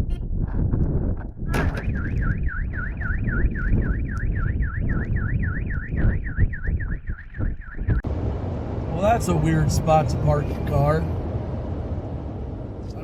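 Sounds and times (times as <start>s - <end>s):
car alarm warbling: 1.5s - 8.1s
loud low rumble: 7.9s - 13.0s.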